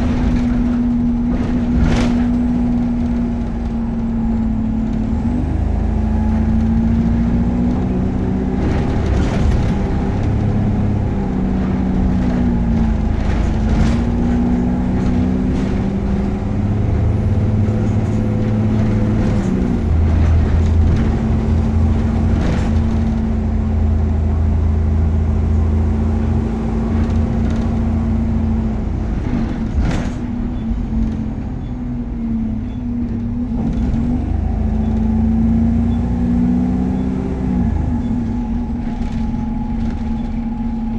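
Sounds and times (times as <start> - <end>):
knocks and rattles: 0.0 - 5.4, 6.2 - 23.8, 25.9 - 31.7
bus engine running: 0.0 - 40.9.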